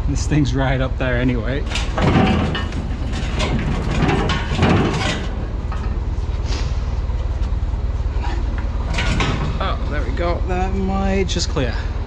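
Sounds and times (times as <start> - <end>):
forklift engine running: 1.0 - 11.7
clunks and scrapes from load: 1.5 - 6.9, 8.2 - 10.2.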